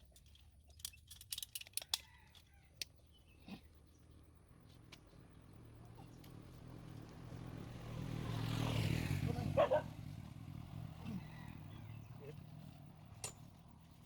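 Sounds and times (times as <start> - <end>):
vehicle engine passing: 5.6 - 14.0.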